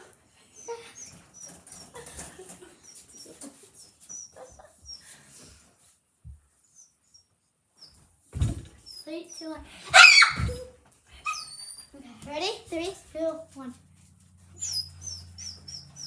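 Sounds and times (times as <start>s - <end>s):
pet animal squeaking: 14.6s - 16.0s.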